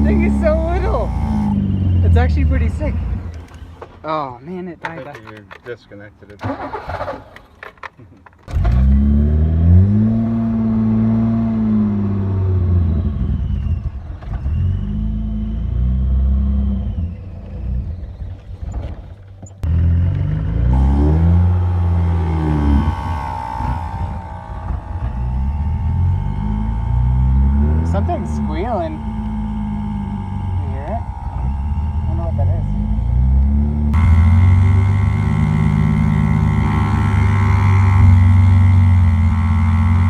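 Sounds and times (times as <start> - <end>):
high-pitched squeal: 0.0 - 3.8, 19.6 - 40.0
car engine revving: 0.0 - 4.0, 8.5 - 19.0, 19.6 - 40.0.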